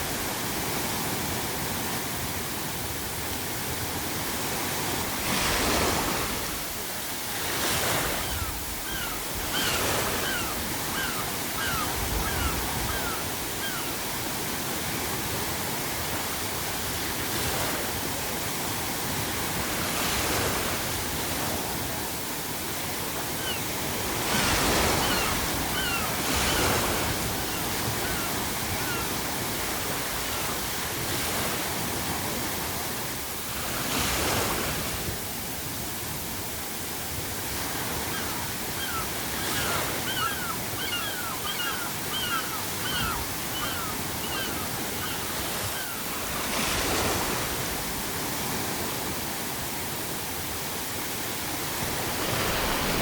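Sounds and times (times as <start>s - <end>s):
sea waves breaking on shore: 0.0s - 53.0s
seagulls calling: 7.6s - 14.4s, 23.3s - 31.4s, 37.8s - 47.2s.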